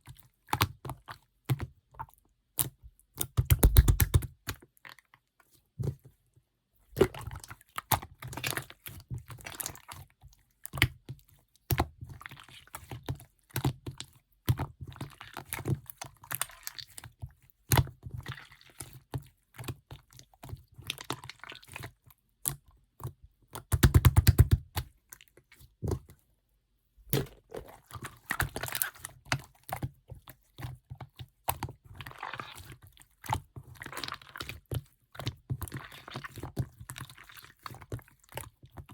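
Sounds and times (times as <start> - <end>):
slime squished by hand: 3.2 - 4.5.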